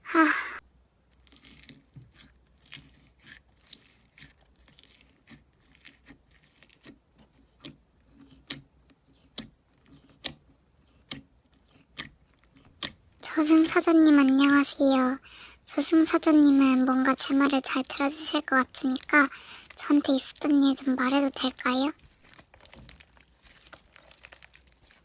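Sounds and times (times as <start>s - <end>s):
slime crackling and popping: 1.1s - 6.9s, 16.0s - 25.0s.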